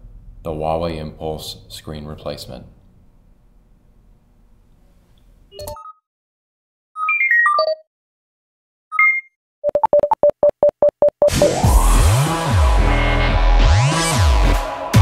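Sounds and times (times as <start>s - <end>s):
electronic beeps: 8.9s - 10.6s
electronic dance music: 11.3s - 15.0s.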